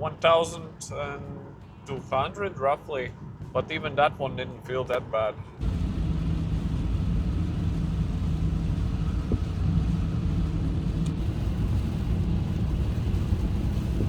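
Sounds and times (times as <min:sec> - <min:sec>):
car driving at speed: 0:05.6 - 0:14.0.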